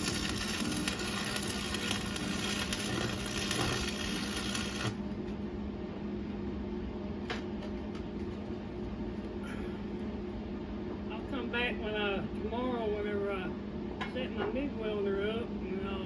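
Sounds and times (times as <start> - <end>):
welding arc crackling: 0.0 - 5.0
electrical hum: 0.0 - 16.0.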